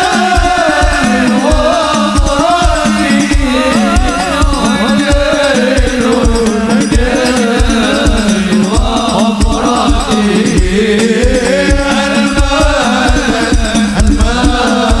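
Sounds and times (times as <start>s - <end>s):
hand drum percussion: 0.0s - 15.0s
person singing ornamented melody: 0.0s - 15.0s
deep boomy bass beat: 12.4s - 15.0s.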